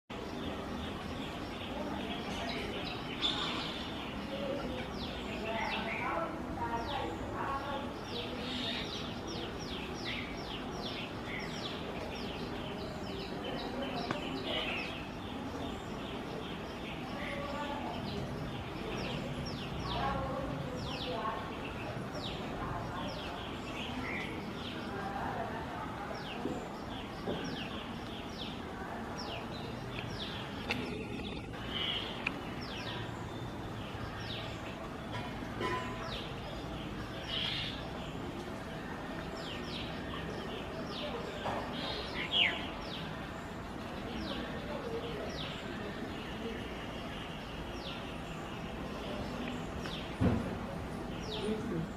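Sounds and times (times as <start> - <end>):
steady background hiss: 0.1 - 51.9.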